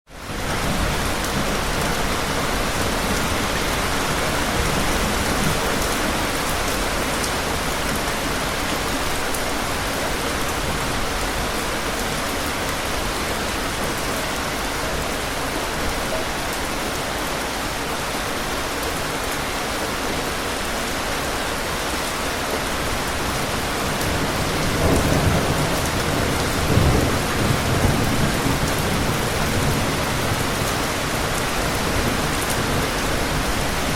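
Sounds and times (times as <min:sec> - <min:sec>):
heavy rain falling: 0:00.1 - 0:33.9
distant thunder rumbling: 0:23.9 - 0:33.9.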